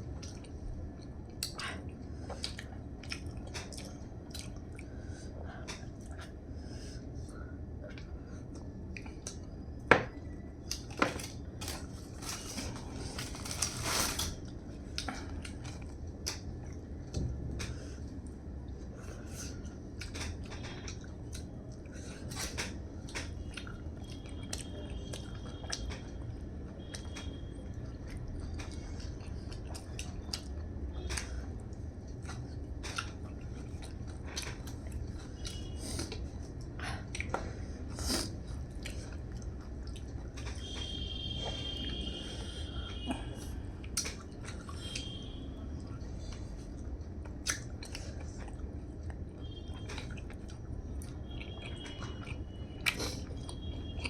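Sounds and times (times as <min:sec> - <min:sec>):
chewing and biting: 0:47.2 - 0:54.0.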